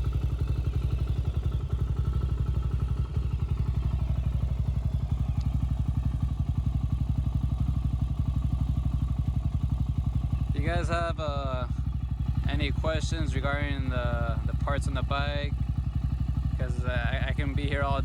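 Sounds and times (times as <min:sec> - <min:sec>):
single-cylinder engine idling: 0:00.0 - 0:18.0.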